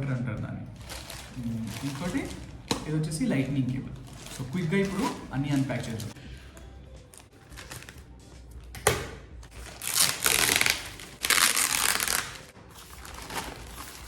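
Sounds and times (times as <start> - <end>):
packaging ripping: 0.8 - 2.7, 4.0 - 6.1, 7.5 - 8.0, 9.6 - 14.0.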